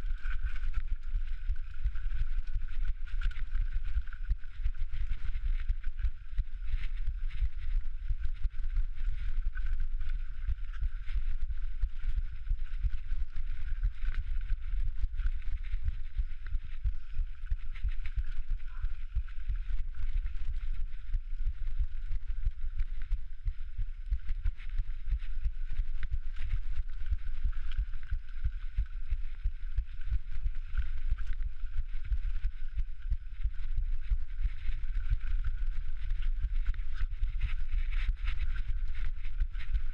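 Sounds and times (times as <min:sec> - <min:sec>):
heartbeat thumping: 0:10.4 - 0:39.9.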